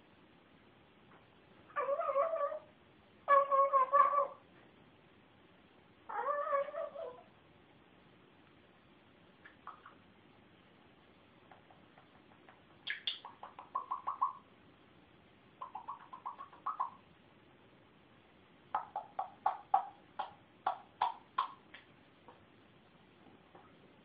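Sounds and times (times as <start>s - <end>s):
pet animal chirping calls: 9.6s - 10.0s, 12.8s - 14.5s, 15.6s - 17.0s, 18.8s - 21.6s.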